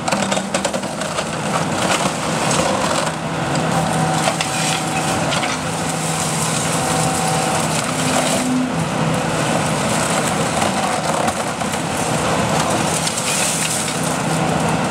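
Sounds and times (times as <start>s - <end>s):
excavator diesel engine running: 0.0s - 14.9s.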